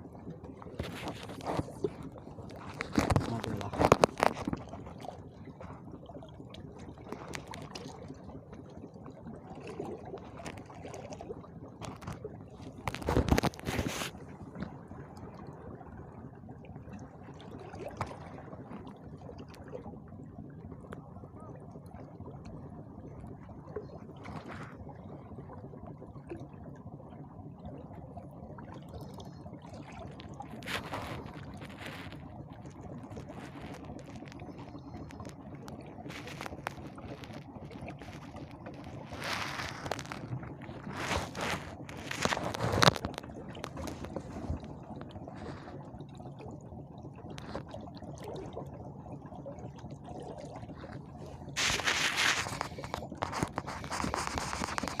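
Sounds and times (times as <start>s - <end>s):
seawater lapping against rocks: 0.0s - 15.4s, 23.4s - 25.4s, 28.6s - 55.0s.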